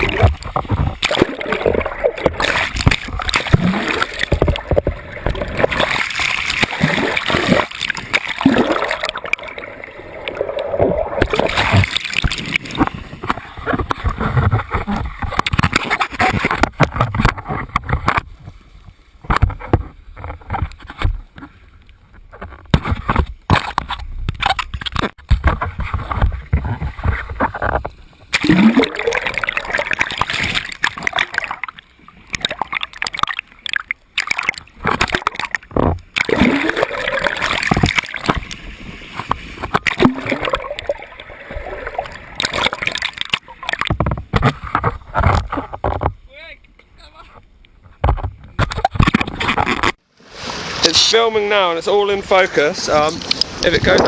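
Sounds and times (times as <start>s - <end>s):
water gurgling and splashing: 0.0s - 21.4s, 22.1s - 46.1s.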